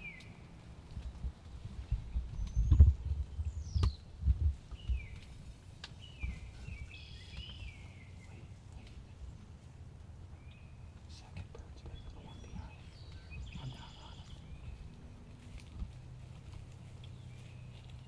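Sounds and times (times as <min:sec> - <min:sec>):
birds chirping: 0:00.0 - 0:18.0
low thumps and knocks: 0:01.0 - 0:05.2.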